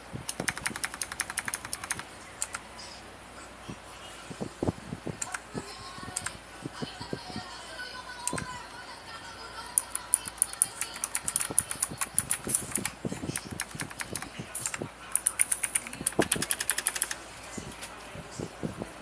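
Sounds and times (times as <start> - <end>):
clicky mechanical keyboard typing: 0.3 - 2.6, 5.2 - 5.4, 9.8 - 17.2.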